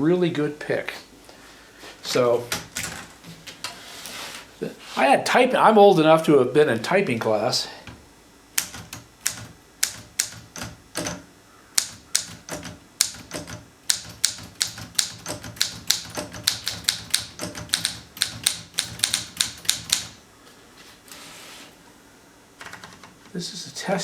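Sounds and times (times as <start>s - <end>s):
typewriter key strikes: 8.6s - 11.2s, 11.8s - 20.2s.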